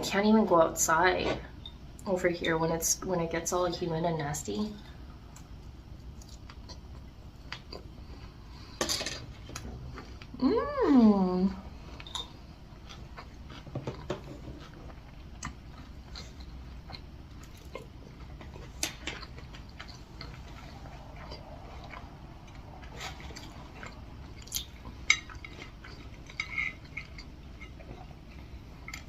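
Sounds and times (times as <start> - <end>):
person chewing: 11.9 - 29.0.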